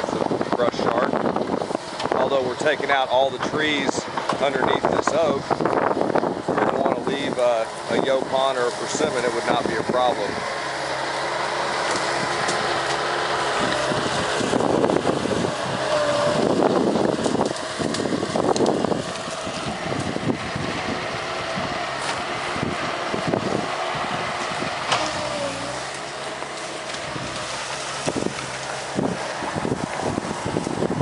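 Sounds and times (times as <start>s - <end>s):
diesel engine running: 0.0s - 31.0s
brush crackling and snapping: 6.6s - 30.8s.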